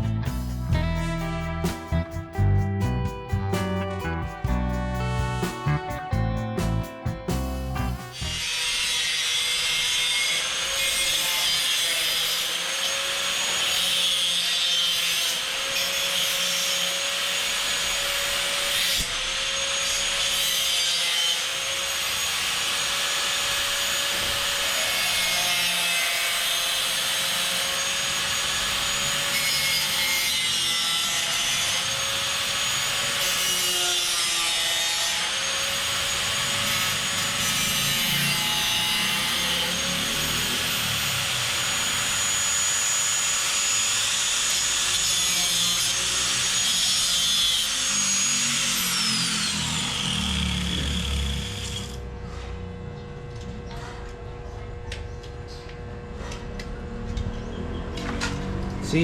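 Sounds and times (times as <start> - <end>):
angle grinder cutting metal: 7.8 - 52.1.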